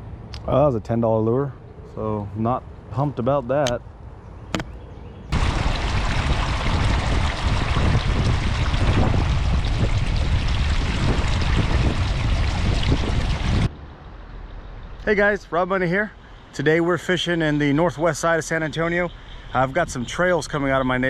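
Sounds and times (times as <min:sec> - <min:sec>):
creek water rushing: 0:05.4 - 0:13.7.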